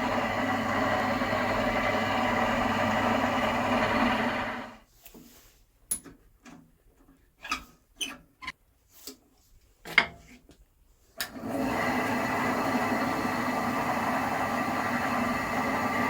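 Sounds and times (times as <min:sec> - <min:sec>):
bandsaw running: 0:00.0 - 0:04.8, 0:11.4 - 0:16.0.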